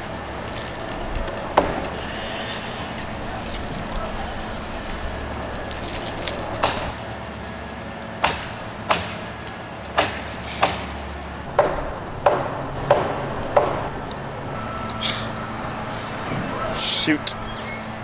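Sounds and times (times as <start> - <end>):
steady low rumble: 0.0 - 16.8
sharp knocks: 8.2 - 13.9.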